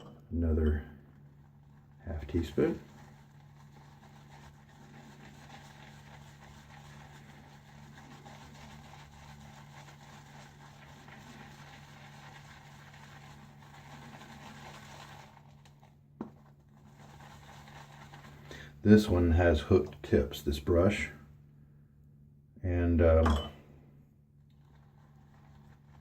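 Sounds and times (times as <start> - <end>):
shaving brush swishing lather: 1.3 - 19.8, 24.6 - 26.0.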